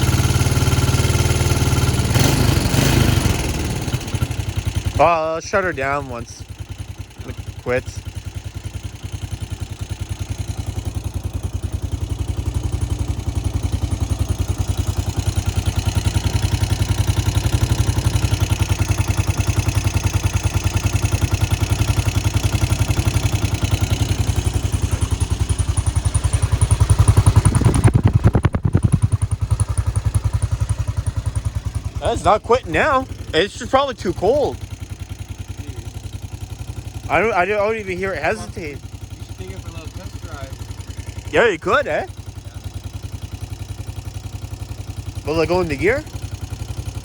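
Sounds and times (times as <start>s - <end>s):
atv engine idling: 0.0s - 47.0s.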